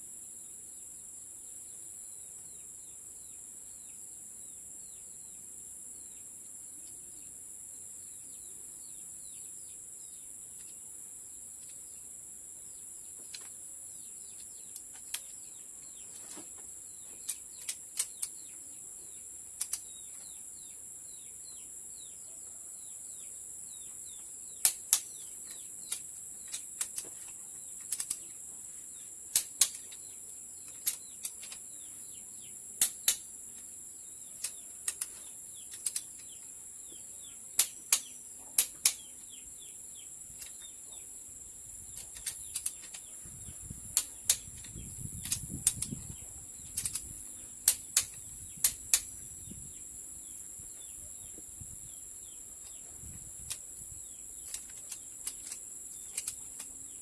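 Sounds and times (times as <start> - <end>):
high insect drone: 0.0 - 57.0
clicks and knocks of hand tools: 24.6 - 28.4, 29.3 - 31.7, 34.4 - 36.4, 37.6 - 39.1, 41.9 - 43.1, 46.7 - 49.1, 54.4 - 56.8.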